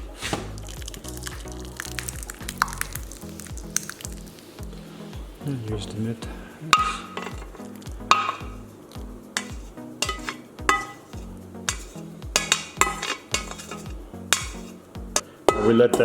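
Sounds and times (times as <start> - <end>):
background music with steady beat: 0.0 - 16.0
metal utensils clinking: 6.7 - 16.0.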